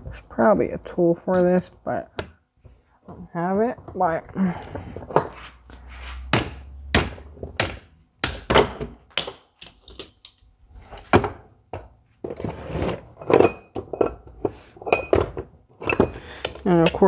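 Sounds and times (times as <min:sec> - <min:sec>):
tools knocking on metal: 0:06.2 - 0:09.0, 0:13.3 - 0:17.0.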